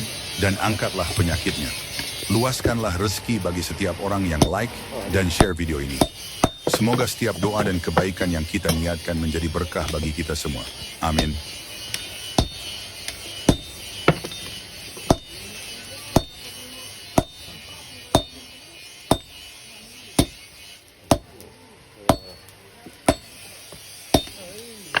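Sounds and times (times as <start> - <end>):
hammer striking iron on anvil: 4.3 - 4.6, 5.4 - 8.9, 11.1 - 19.6, 20.2 - 21.4, 22.1 - 25.0.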